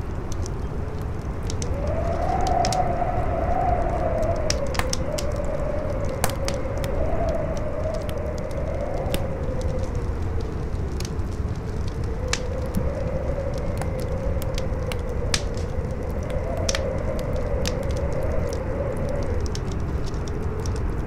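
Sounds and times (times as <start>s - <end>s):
campfire crackling and popping: 0.0s - 21.0s
howling wind: 0.0s - 21.0s
low wind rumble: 0.0s - 21.0s.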